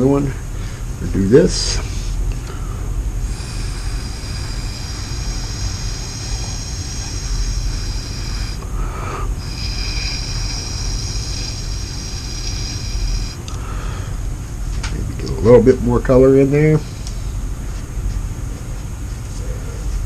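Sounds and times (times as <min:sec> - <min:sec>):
person taking a breath: 0:02.0 - 0:14.2
blowing through a straw: 0:03.2 - 0:13.4.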